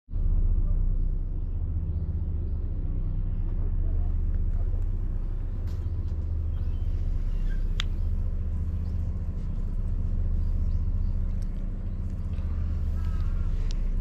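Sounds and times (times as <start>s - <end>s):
engine idling: 0.1s - 14.0s.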